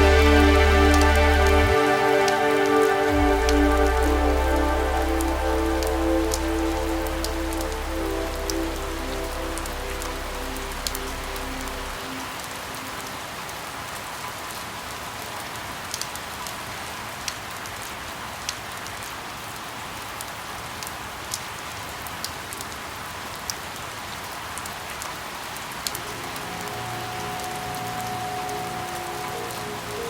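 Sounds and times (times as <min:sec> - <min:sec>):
steady rain hiss: 0:00.0 - 0:30.0.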